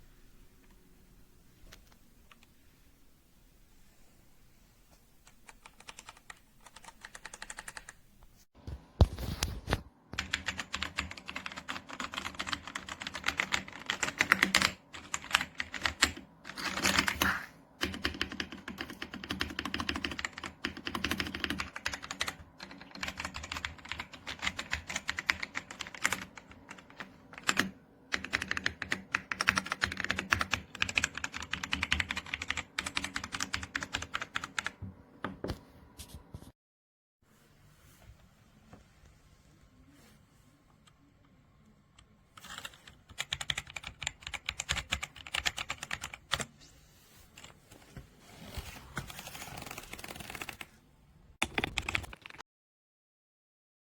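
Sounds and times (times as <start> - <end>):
mechanical keyboard typing: 5.2 - 8.0, 10.2 - 35.4, 42.4 - 46.5, 49.2 - 50.7, 51.4 - 52.4.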